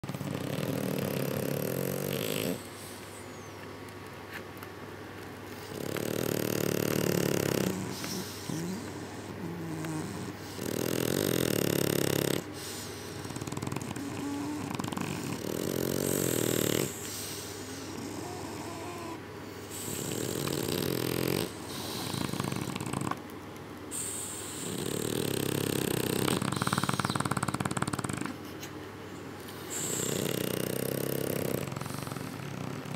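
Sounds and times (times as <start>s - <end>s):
dog snoring loudly: 0.0s - 3.0s, 5.6s - 23.2s, 23.9s - 28.4s, 29.6s - 32.9s
wheezy whistling breaths: 0.7s - 3.7s, 23.9s - 27.7s.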